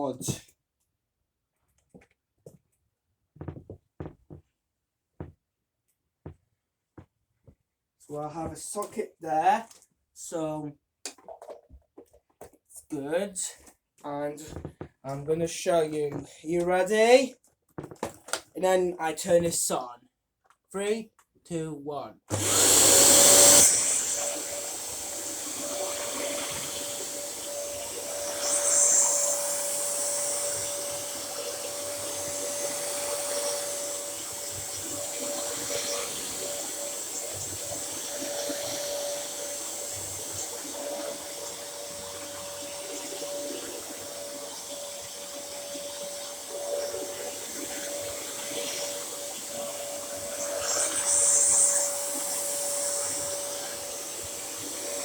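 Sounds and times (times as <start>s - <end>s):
vacuum cleaner motor whine: 22.3s - 55.0s.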